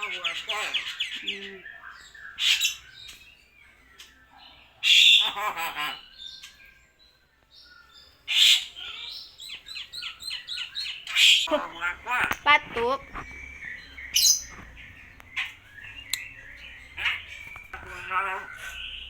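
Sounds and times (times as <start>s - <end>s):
bird harsh squawk: 4.8s - 6.2s, 8.3s - 9.3s, 10.0s - 13.4s, 16.8s - 19.0s.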